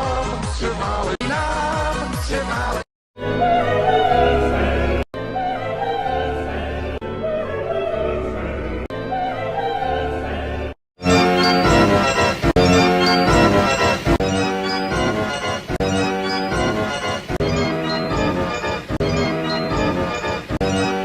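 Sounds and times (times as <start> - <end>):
operatic singing with accompaniment: 0.0 - 7.0.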